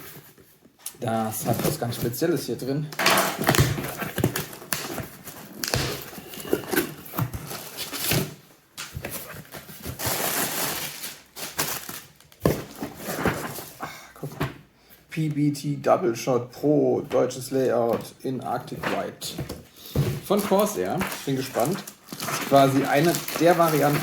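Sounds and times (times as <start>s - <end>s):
cardboard rustling and tearing: 3.4s - 13.8s, 20.0s - 24.0s.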